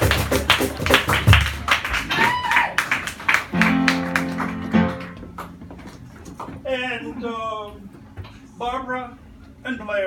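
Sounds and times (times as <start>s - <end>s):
guitar strumming: 3.5s - 6.4s.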